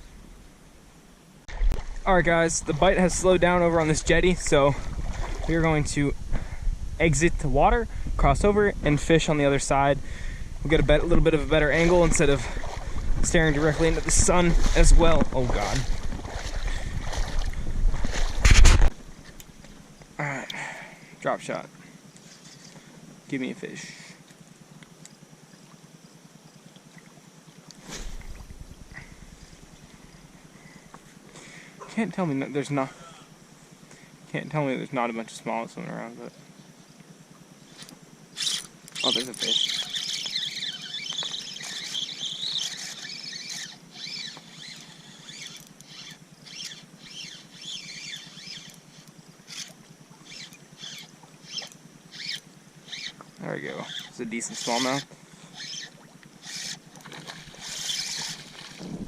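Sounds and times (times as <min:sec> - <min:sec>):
lake water lapping: 0:01.5 - 0:06.6, 0:10.0 - 0:20.7, 0:25.2 - 0:34.2, 0:36.3 - 0:59.0
fishing reel squealing whir: 0:08.4 - 0:18.4, 0:22.2 - 0:22.8, 0:37.6 - 0:59.0.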